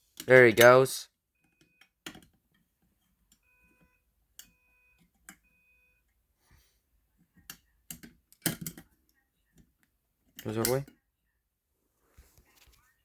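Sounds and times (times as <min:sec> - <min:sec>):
faint fire alarm horn: 0:03.4 - 0:06.1.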